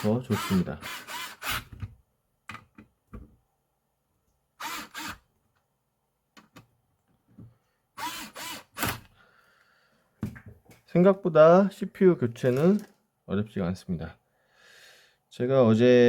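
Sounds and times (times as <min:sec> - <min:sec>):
screwdriver driving screws: 0:00.0 - 0:01.8, 0:04.6 - 0:05.2, 0:08.0 - 0:09.1.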